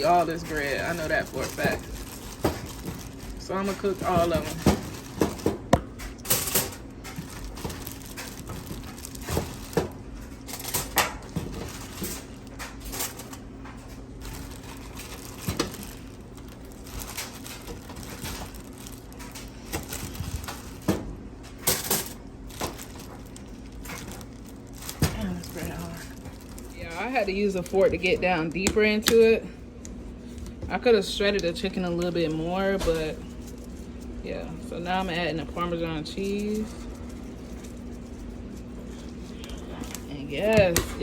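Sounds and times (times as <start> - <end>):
utensils and dishes clattering: 0.0 - 13.4, 17.0 - 23.2.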